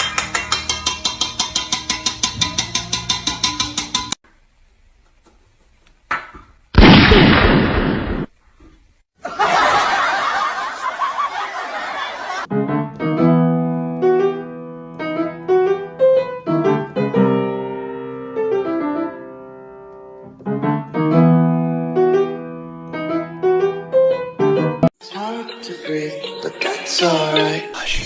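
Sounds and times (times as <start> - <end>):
piano melody over chords: 12.5 - 27.8.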